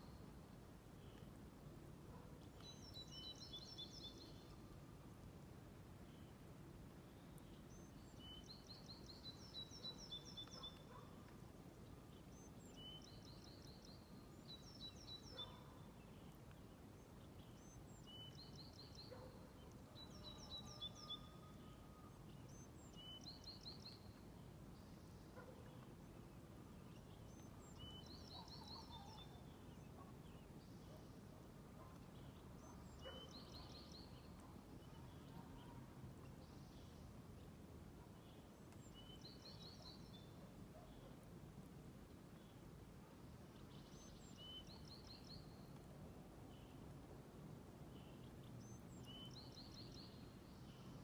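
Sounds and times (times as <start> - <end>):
songbird song: 0.0 - 51.0.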